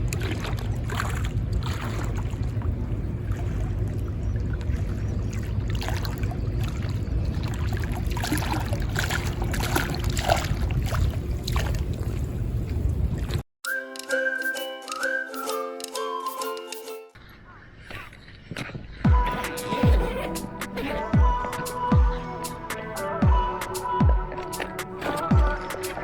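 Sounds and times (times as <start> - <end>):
water noise: 0.0 - 13.4, 17.2 - 26.0
small clicks: 13.9 - 17.0.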